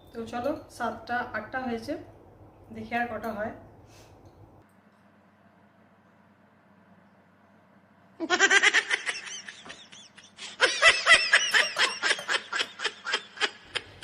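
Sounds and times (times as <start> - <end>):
woman laughing: 8.2 - 14.0.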